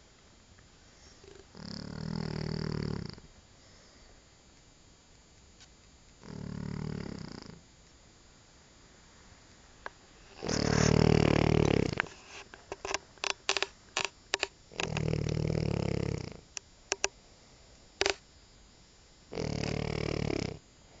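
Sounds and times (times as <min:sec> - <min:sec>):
dog snoring: 0:01.2 - 0:03.3, 0:06.2 - 0:07.6, 0:10.4 - 0:12.1, 0:14.7 - 0:16.4, 0:19.3 - 0:20.6.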